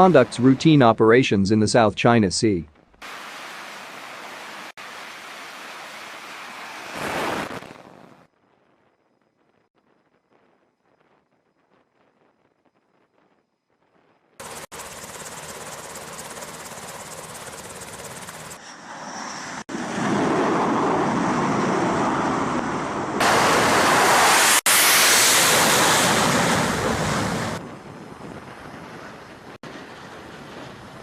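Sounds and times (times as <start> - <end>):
shipboard roar: 22.8 - 27.7.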